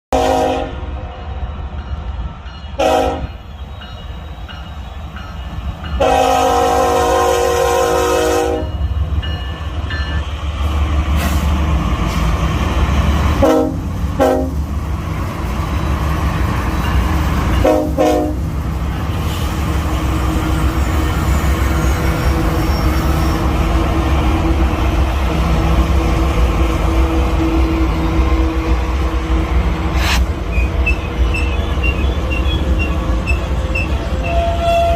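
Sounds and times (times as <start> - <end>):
train horn blasts: 0.1 - 0.9, 2.8 - 3.9, 6.0 - 8.8, 13.4 - 14.6, 17.6 - 18.5, 32.8 - 34.9
low rumble of rolling train: 0.1 - 34.9.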